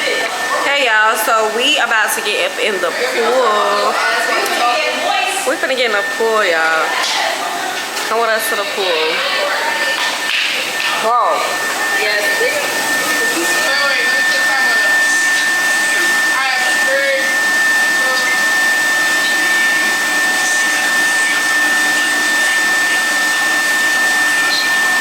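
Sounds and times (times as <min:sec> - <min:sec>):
faint voices: 0:00.0 - 0:21.6
high-pitched whine: 0:08.0 - 0:25.0.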